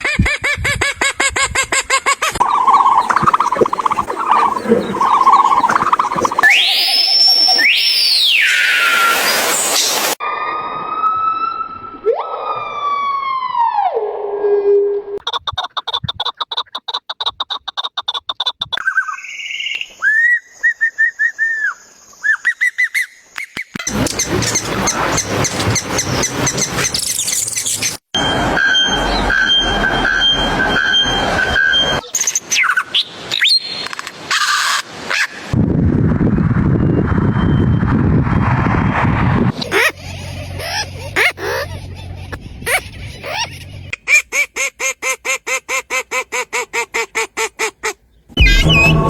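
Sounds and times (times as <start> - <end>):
short repeated animal calls: 2.4 - 7.0, 39.6 - 40.0, 40.6 - 41.7
animal trilling: 2.4 - 7.8, 39.6 - 44.3
bird calls: 2.4 - 8.7, 39.6 - 49.0.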